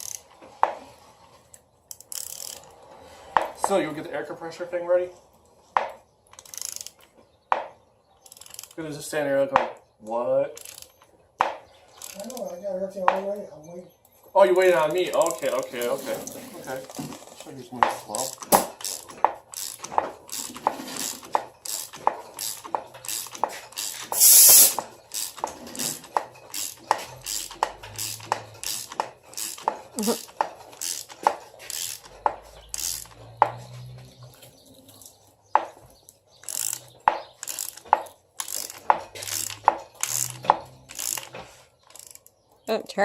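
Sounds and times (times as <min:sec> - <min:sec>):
sharp metallic tool clicks: 0:21.3 - 0:33.2, 0:36.4 - 0:42.3
loud hiss: 0:24.1 - 0:24.8.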